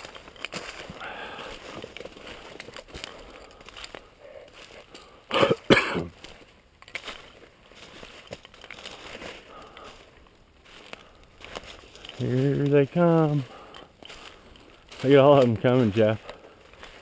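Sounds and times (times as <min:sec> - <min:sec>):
person coughing: 0:05.3 - 0:06.1.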